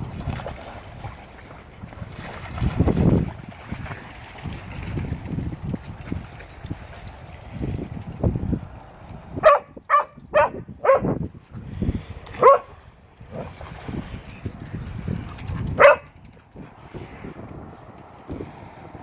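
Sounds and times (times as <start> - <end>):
dog barking: 9.4 - 11.2, 12.4 - 12.7, 15.8 - 16.1.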